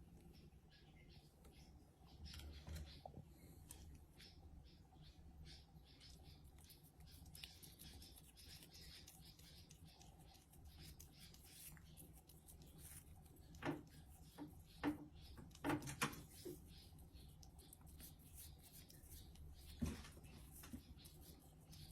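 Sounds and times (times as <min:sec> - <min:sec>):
toothbrush scrubbing teeth: 0:06.6 - 0:15.6.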